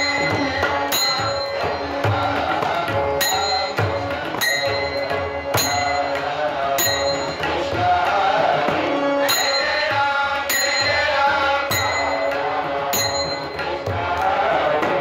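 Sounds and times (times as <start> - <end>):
ringing metallic strike: 0.0 - 2.3, 3.2 - 7.8, 9.3 - 13.8
tabla: 0.0 - 15.0.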